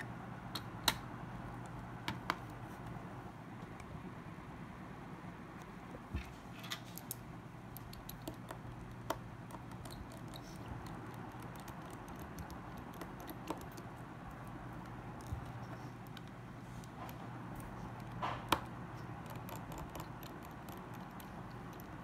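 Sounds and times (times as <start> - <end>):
steady low hum: 0.0 - 22.0
small clicks and taps of parts: 5.6 - 22.0.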